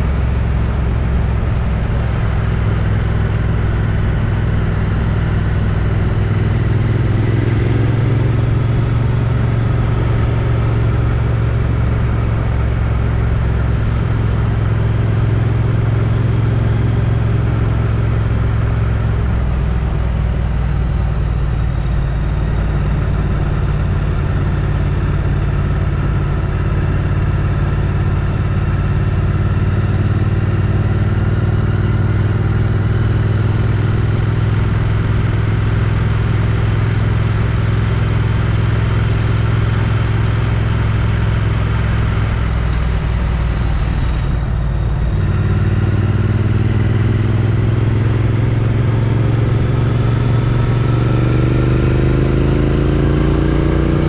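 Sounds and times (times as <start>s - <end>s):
motorcycle engine cruising: 0.0s - 54.0s.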